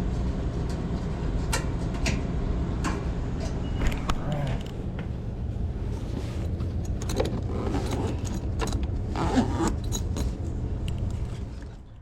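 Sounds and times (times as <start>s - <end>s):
steady low hum: 0.0s - 12.0s
gear clicking and rattling: 6.8s - 11.6s.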